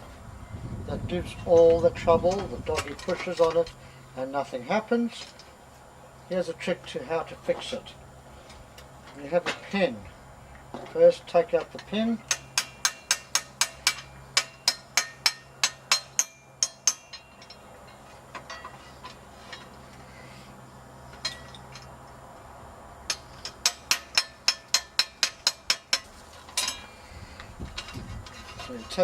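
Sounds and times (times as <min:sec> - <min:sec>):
small hammer tapping metal: 0:12.3 - 0:17.6, 0:23.1 - 0:26.9.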